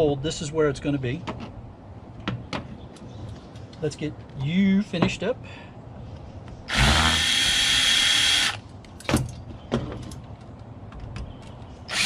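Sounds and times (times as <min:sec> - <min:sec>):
power drill running: 0:06.7 - 0:08.6.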